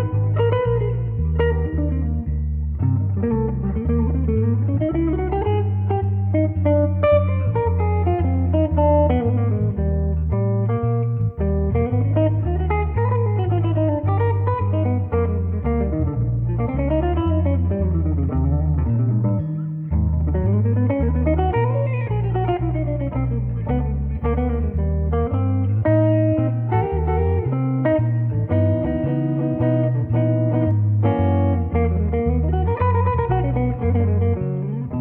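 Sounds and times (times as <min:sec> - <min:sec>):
bass line: 0:00.0 - 0:35.0
plucked guitar music: 0:00.0 - 0:35.0.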